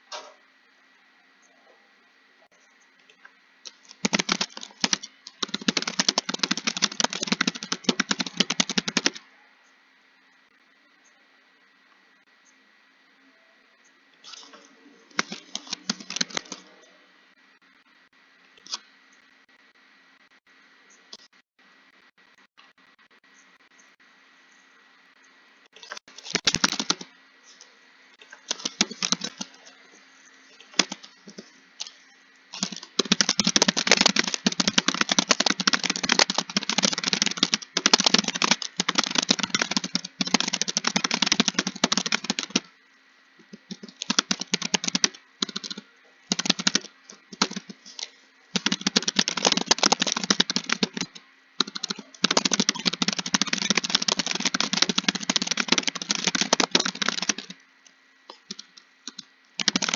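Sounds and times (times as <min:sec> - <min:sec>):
typing on computer keyboard: 0:03.6 - 0:09.2, 0:14.3 - 0:16.9, 0:25.9 - 0:27.6, 0:28.2 - 0:29.8, 0:30.5 - 0:42.7, 0:43.5 - 0:57.6, 0:58.3 - 0:59.9.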